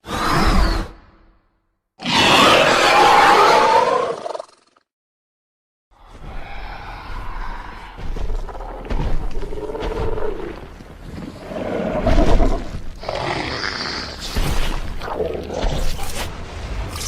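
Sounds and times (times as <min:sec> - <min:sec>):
monster screeching: 0:02.0 - 0:04.4
monster growling and roaring: 0:02.0 - 0:04.5, 0:11.4 - 0:16.4.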